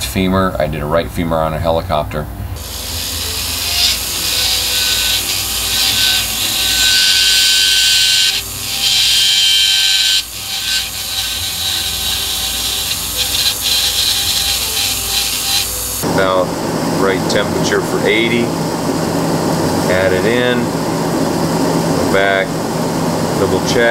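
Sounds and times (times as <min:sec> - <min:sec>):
power tool grinding: 0:02.6 - 0:23.9.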